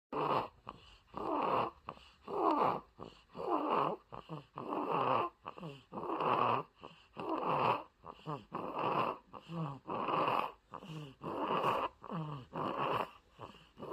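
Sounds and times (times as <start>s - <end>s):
baby snoring: 0.1s - 13.9s.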